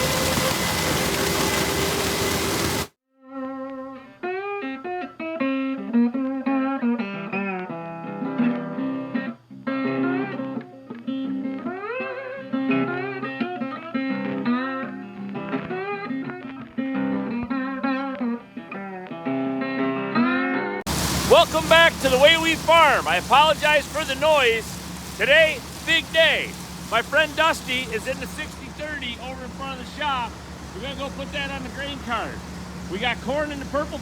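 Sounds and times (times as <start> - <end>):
guitar tune with slides: 3.6 - 20.6.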